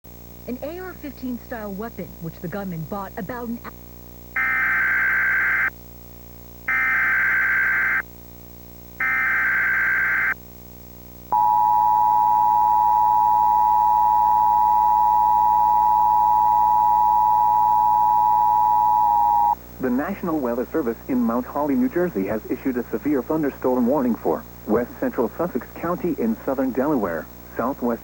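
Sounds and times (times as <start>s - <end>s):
steady two-tone attention signal: 11.3s - 19.6s.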